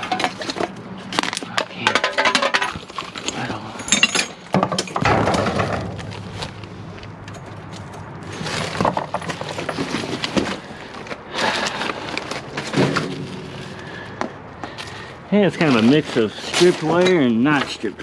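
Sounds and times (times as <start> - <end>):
scrap metal clinking and rattling: 0.0 - 13.9.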